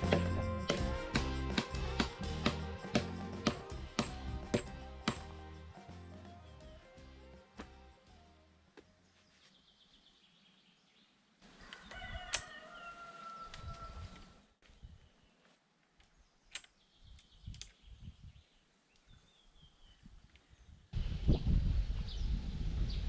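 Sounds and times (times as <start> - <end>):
small birds chirping: 8.8 - 12.0, 14.6 - 20.9
rooster crowing: 11.6 - 14.4
sharp clicks: 16.5 - 17.8.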